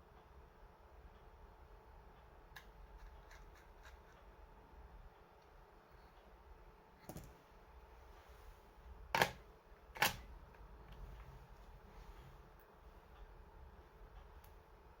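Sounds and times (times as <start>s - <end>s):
laptop parts clicking: 9.1s - 10.3s.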